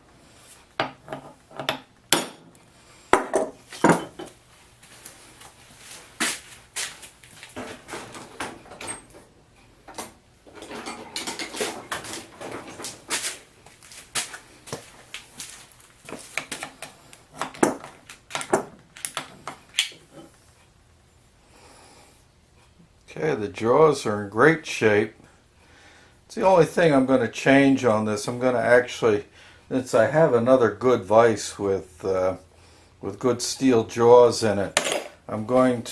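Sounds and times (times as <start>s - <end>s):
scraping and shuffling: 3.4s - 8.5s, 10.5s - 18.3s.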